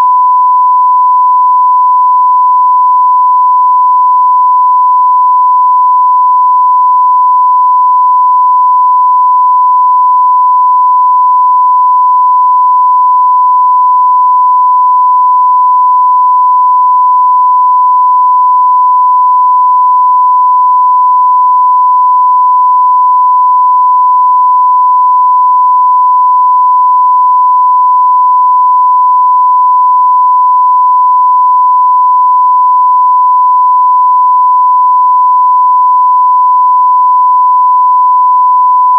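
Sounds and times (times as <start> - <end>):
censor beep tone: 0.0 - 38.9.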